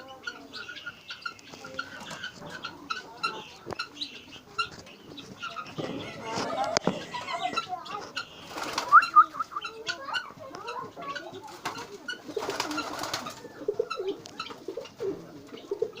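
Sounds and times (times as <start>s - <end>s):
birds chirping: 0.0s - 16.0s
low repeated cooing: 8.5s - 10.1s, 10.7s - 16.0s.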